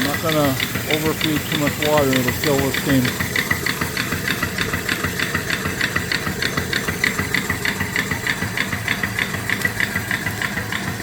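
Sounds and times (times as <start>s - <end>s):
steam hiss: 0.0s - 5.0s
steam engine chuffing: 0.0s - 11.0s.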